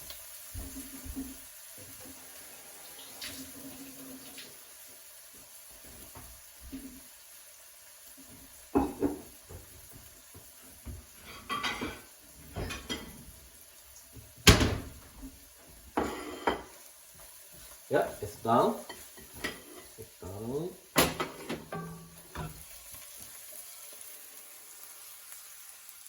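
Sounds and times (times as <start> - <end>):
utensil scraping a frying pan: 11.1 - 13.4, 15.9 - 16.9, 18.2 - 20.2, 21.0 - 22.9.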